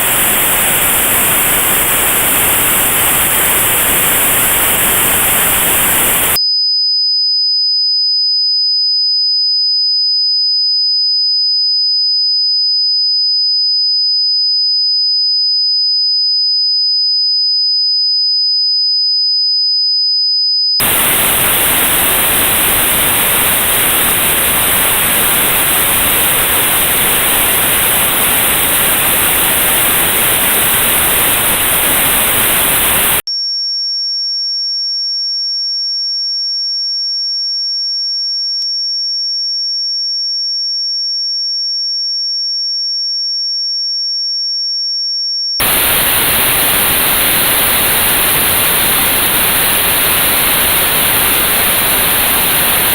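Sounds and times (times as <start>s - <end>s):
high-pitched pure test tone: 0.0s - 6.4s, 20.8s - 33.2s, 45.6s - 52.9s
notched white noise hiss: 0.0s - 6.4s, 20.8s - 33.2s, 45.6s - 52.9s.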